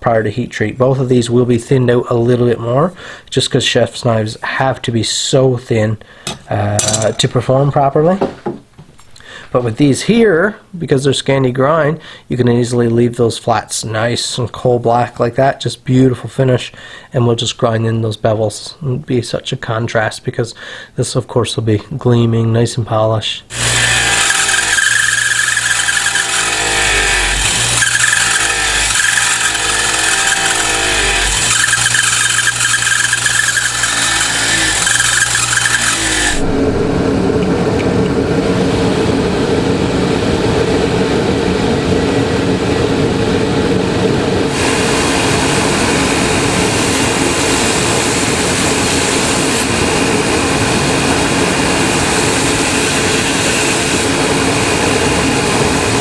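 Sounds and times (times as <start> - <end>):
grinder squealing on steel: 23.5 - 36.5
grinder motor hum: 23.5 - 56.0.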